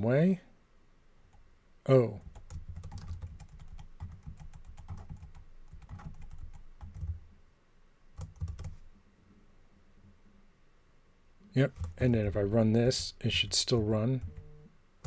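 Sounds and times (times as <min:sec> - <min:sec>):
computer keyboard typing: 0:02.2 - 0:07.2, 0:08.2 - 0:08.9, 0:11.7 - 0:14.6.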